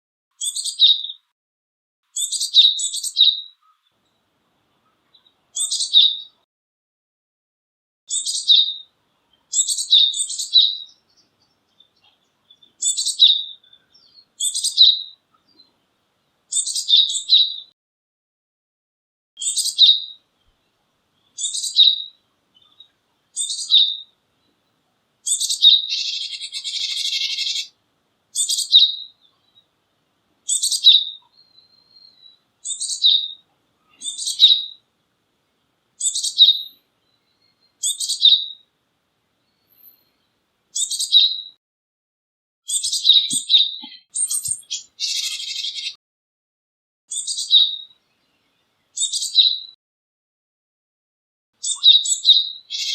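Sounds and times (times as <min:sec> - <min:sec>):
bird singing high phrases: 0:00.4 - 0:01.3, 0:02.1 - 0:03.8, 0:04.9 - 0:06.4, 0:08.1 - 0:15.7, 0:16.5 - 0:17.7, 0:19.4 - 0:20.6, 0:21.2 - 0:24.5, 0:25.2 - 0:29.7, 0:30.5 - 0:34.8, 0:36.0 - 0:38.7, 0:39.4 - 0:41.6, 0:42.7 - 0:46.0, 0:47.1 - 0:49.8, 0:51.6 - 0:52.9
harsh buzzy bird call: 0:25.3 - 0:27.7, 0:42.7 - 0:46.0, 0:51.6 - 0:52.9.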